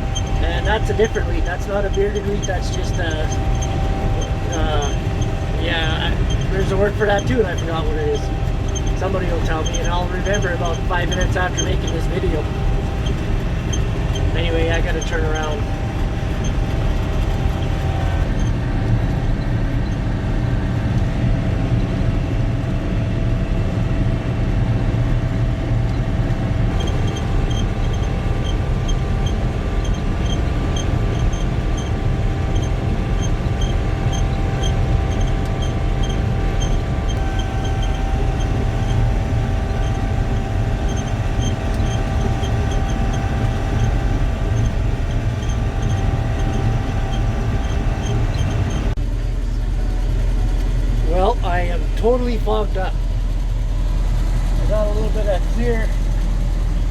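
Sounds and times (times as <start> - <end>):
light regular ticking: 0.0 - 18.3, 26.7 - 49.0
engine drone with whining drives: 0.0 - 56.9.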